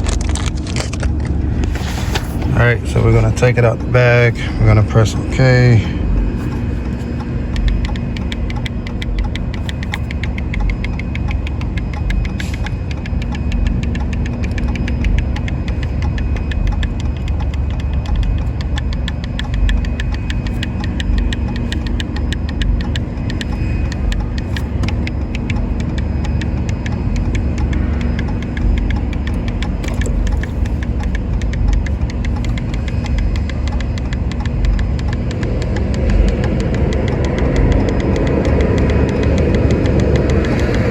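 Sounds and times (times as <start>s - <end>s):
rapid regular ticking: 0.0s - 40.9s
vehicle engine idling: 0.0s - 40.9s.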